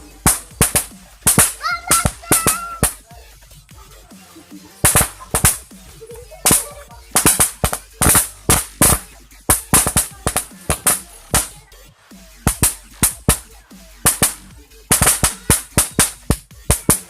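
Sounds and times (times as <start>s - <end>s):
toy caps popping: 0.2s - 3.0s, 4.8s - 5.7s, 6.4s - 11.6s, 12.5s - 13.5s, 14.1s - 17.0s.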